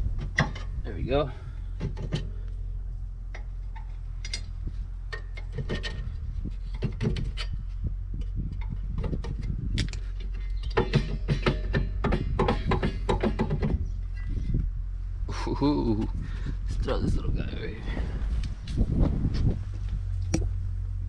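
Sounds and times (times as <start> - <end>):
steady low hum: 0.0 - 21.0
metallic clicks and knocks of brake parts: 0.1 - 0.8, 1.8 - 2.6, 3.3 - 14.4.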